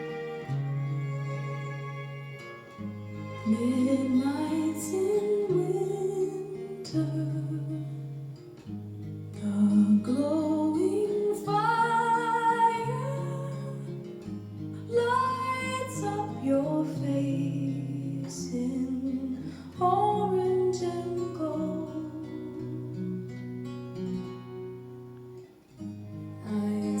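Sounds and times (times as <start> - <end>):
acoustic guitar: 0.0 - 27.0
woman singing: 3.4 - 8.3, 9.3 - 23.0, 26.2 - 27.0.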